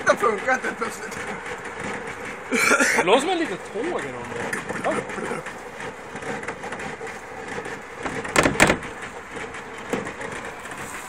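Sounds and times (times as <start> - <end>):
boiling cooling system chuffing hiss: 8.8 - 11.0.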